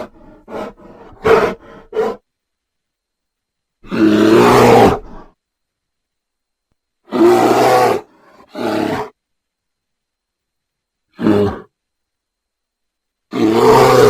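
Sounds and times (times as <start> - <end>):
bear growling: 0.0 - 2.2, 3.8 - 5.3, 7.1 - 9.2, 11.1 - 11.7, 13.3 - 14.0.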